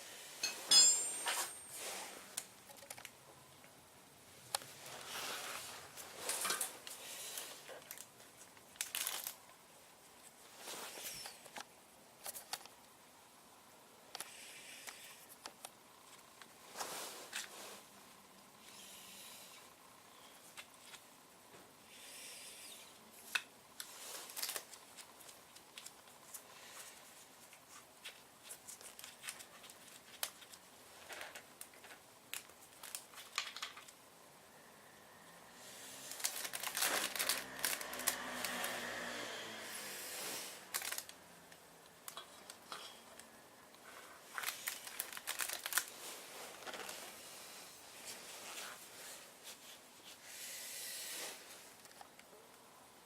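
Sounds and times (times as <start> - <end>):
tools clicking and tapping: 0.4 - 1.6.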